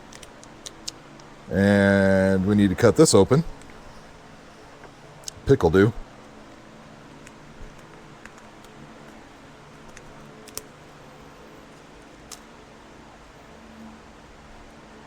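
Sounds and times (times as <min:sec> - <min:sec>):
steady low hum: 0:00.0 - 0:15.0
small sharp clicks and taps: 0:09.8 - 0:10.7.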